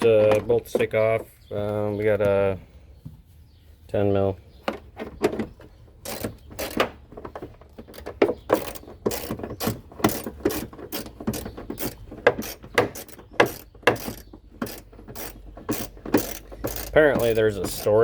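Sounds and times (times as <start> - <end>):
socket ratchet clicking: 6.0 - 6.9, 7.9 - 17.9.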